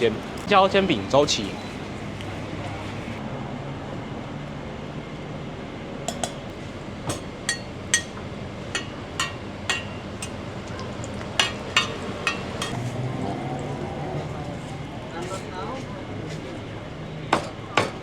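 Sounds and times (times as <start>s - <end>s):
street background noise: 0.0s - 18.0s
metal spatula clinking on griddle: 7.1s - 8.2s, 8.8s - 10.4s, 11.4s - 12.8s.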